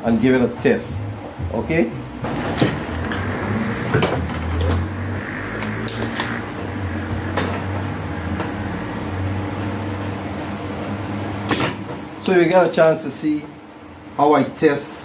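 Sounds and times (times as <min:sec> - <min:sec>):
low machine hum: 0:00.0 - 0:15.0.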